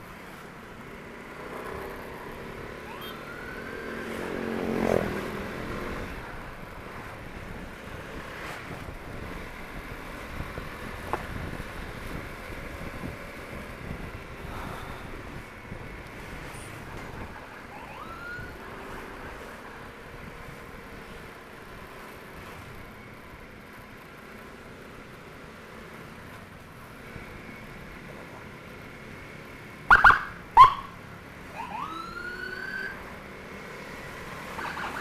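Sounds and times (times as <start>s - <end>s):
traffic and road noise: 0.0s - 35.0s
siren whoops: 2.8s - 4.0s, 17.7s - 18.6s, 31.5s - 33.0s, 34.6s - 35.0s.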